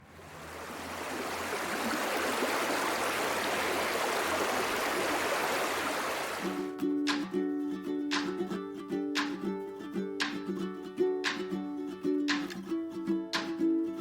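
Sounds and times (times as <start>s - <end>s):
rushing water: 0.0s - 7.2s.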